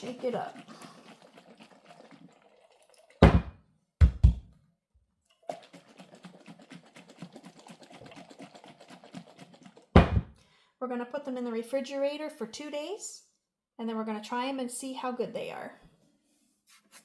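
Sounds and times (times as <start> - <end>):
brine rattling and sloshing in jar: 0.0 - 3.5, 5.3 - 10.3
heavy thunks of jar: 3.2 - 4.5, 10.0 - 10.3.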